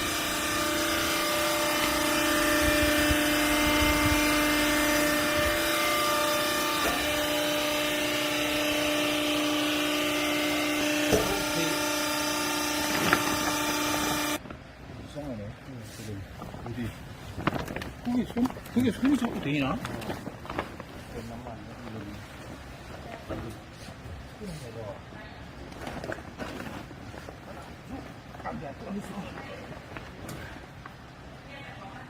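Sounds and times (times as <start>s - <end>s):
hydraulic pump motor whining: 0.0s - 14.4s.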